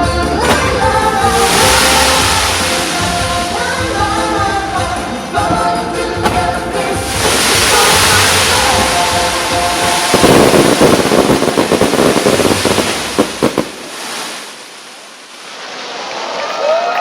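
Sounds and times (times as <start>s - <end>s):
show music: 0.0s - 11.9s
fireworks crackling and popping: 0.4s - 4.5s, 6.2s - 15.9s
sharp firework cracks: 7.1s - 15.2s.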